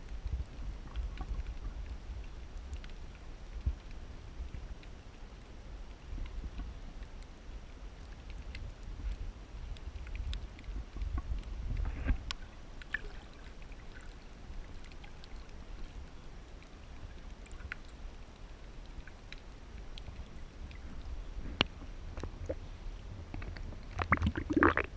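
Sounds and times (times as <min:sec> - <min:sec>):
small clicks and ticks: 0:00.0 - 0:24.4
water rumbling: 0:08.2 - 0:24.9.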